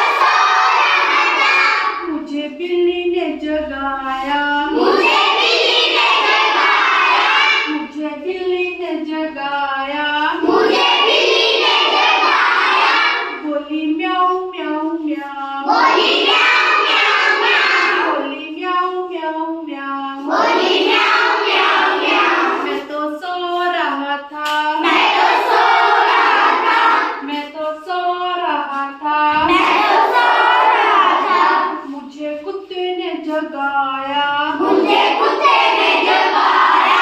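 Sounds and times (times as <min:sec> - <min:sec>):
children singing: 0:00.0 - 0:02.1, 0:04.5 - 0:07.8, 0:10.3 - 0:13.4, 0:15.6 - 0:18.6, 0:20.2 - 0:22.9, 0:24.7 - 0:27.3, 0:29.2 - 0:31.9, 0:34.4 - 0:37.0.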